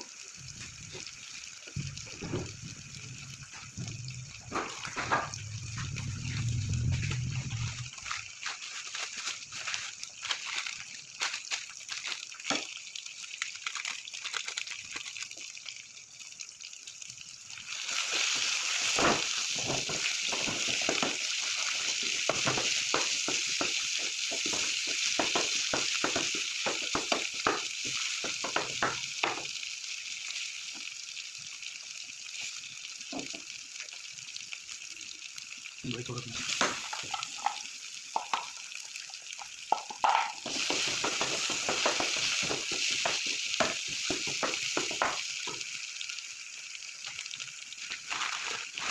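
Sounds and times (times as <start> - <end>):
greens sizzling in a pan: 0.0 - 48.9
spoon stirring in a pan: 17.7 - 29.6, 36.3 - 45.8.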